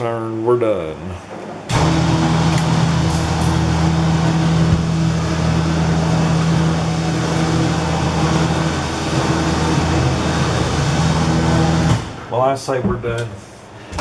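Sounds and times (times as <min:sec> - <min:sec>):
electric hoist motor humming: 0:01.7 - 0:12.3.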